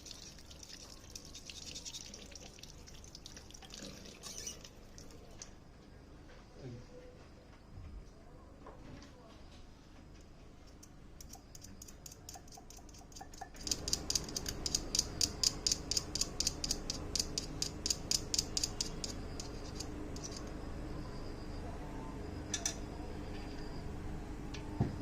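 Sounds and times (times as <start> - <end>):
rapid mechanical clicking: 10.8 - 20.4
steady hum: 13.2 - 25.0.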